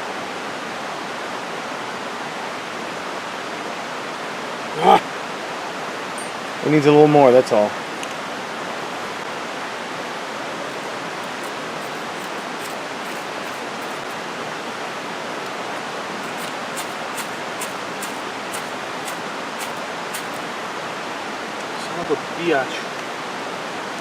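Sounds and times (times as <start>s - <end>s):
creek water rushing: 0.0s - 24.0s
flint and steel striking: 16.2s - 20.4s.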